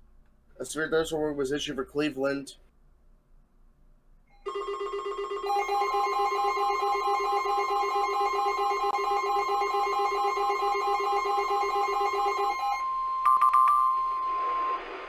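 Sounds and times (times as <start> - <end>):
steady warning alarm tone: 4.4 - 15.0.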